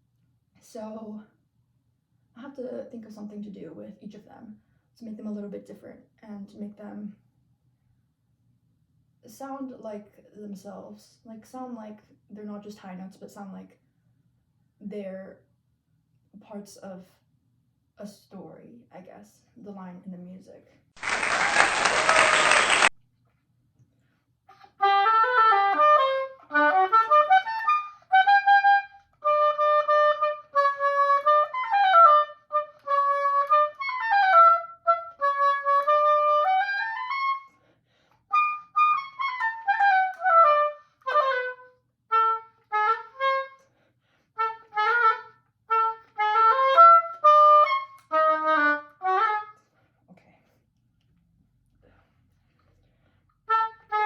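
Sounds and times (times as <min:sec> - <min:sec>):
solo oboe melody: 0:24.8 - 0:37.5, 0:38.3 - 0:43.6, 0:44.4 - 0:49.6, 0:53.5 - 0:54.0.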